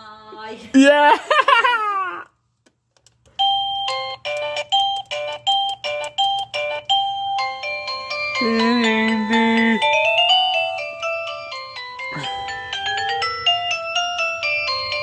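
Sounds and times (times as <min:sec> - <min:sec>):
electronic doorbell chime melody: 0:03.4 - 0:15.0.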